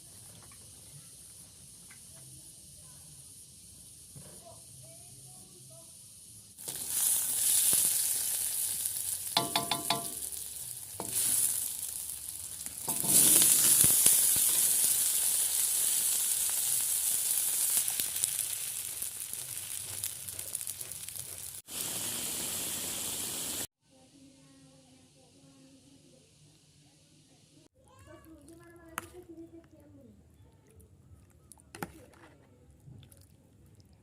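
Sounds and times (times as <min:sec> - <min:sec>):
food sizzling in hot oil: 0:00.0 - 0:23.7.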